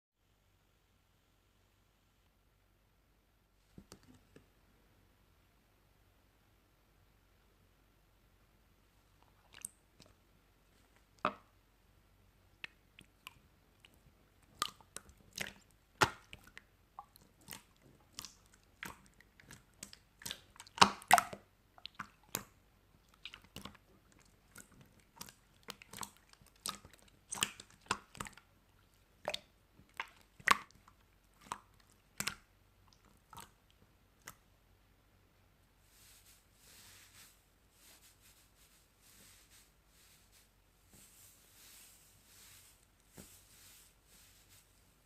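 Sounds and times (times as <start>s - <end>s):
chewing and crunching food: 12.6s - 34.4s.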